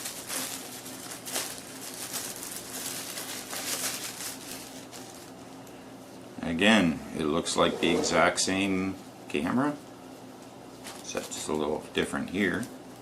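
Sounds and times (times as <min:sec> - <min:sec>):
packaging rustling and crinkling: 0:00.0 - 0:05.4, 0:10.7 - 0:11.5
steady low hum: 0:00.0 - 0:13.0.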